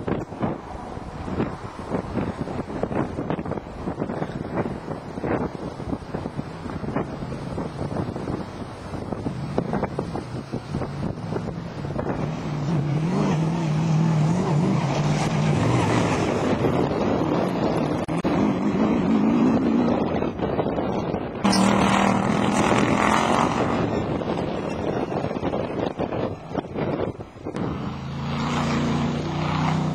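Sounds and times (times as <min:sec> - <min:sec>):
wind buffeting microphone: 0:00.0 - 0:29.9
off-road engine revving: 0:09.1 - 0:29.9.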